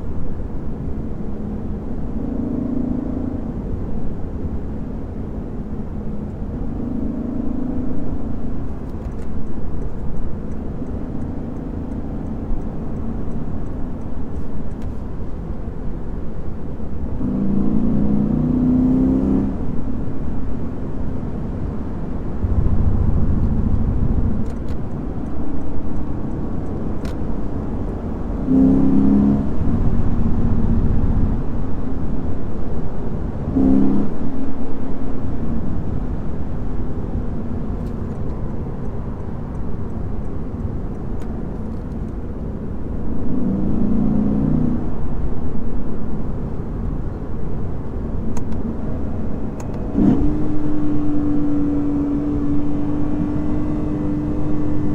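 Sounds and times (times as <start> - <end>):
car engine running: 0.0 - 18.7, 19.5 - 54.9
road and tyre rumble: 0.0 - 54.9.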